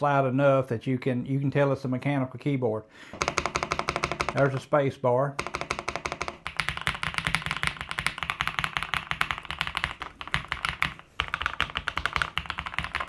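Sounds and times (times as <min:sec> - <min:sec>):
fast typing on mechanical keyboard: 0:03.2 - 0:04.6, 0:05.4 - 0:13.0.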